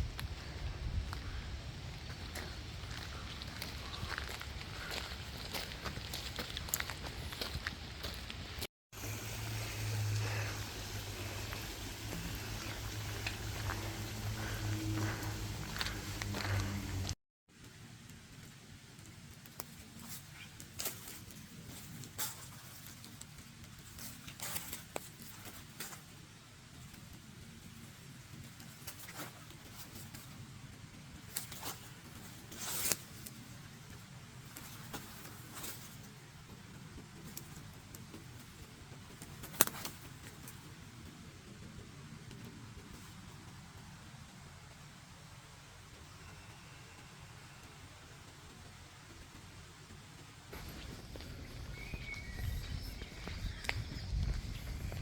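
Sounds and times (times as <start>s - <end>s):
low outdoor rumble: 0.0s - 17.2s, 29.6s - 55.0s
footsteps crunching on trail: 0.2s - 8.7s, 9.4s - 17.2s, 49.9s - 55.0s
low hum: 9.0s - 17.2s
steady rushing noise: 9.0s - 17.2s.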